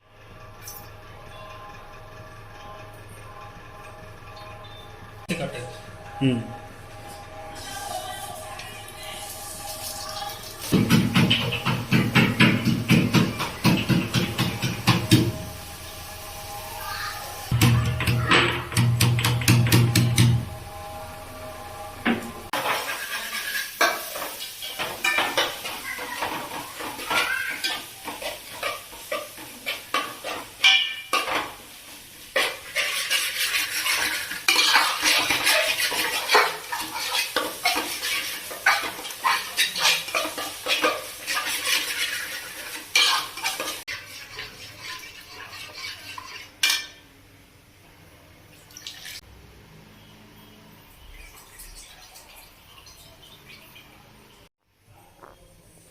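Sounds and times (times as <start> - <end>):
metal spoon clinking on steel pots: 22.6 - 31.6, 32.3 - 47.0.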